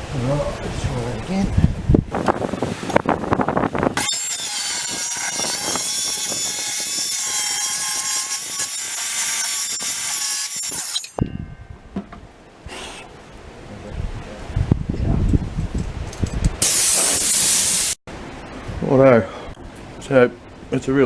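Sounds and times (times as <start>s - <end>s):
power saw cutting: 4.0s - 11.2s.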